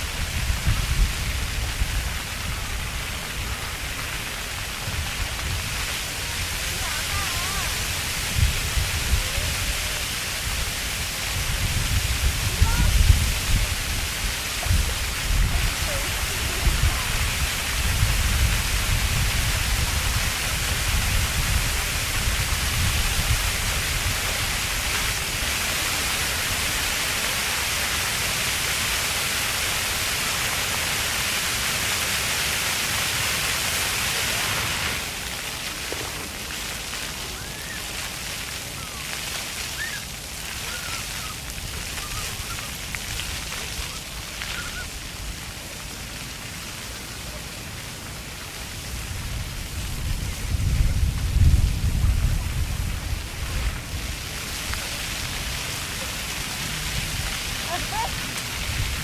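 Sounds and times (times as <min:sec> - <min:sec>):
fountain jets spraying and splashing: 0:00.0 - 0:59.0
children's voices and shouts: 0:06.7 - 0:07.7, 0:12.4 - 0:13.2, 0:57.7 - 0:58.2.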